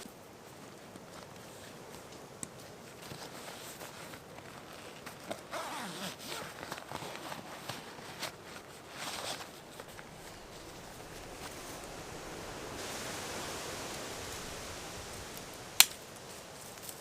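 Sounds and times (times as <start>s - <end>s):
rustling and scraping handling noise: 0.0s - 13.4s.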